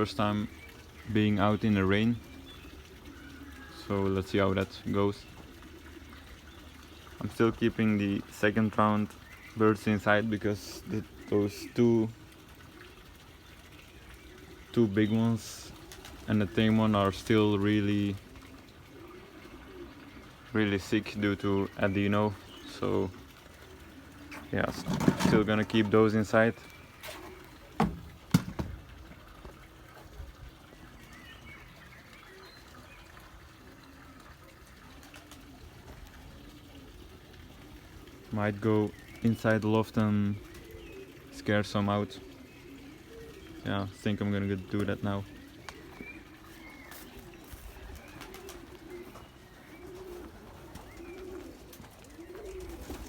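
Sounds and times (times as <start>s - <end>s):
pigeons cooing: 0.0s - 53.0s
sharp knocks: 27.8s - 28.8s.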